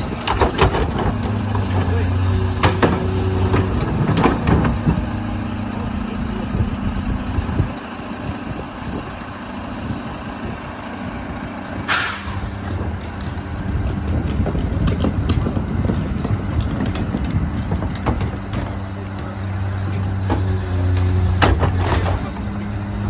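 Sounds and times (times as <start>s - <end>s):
garbage truck running: 0.0s - 23.0s
air brake hiss: 11.9s - 12.6s.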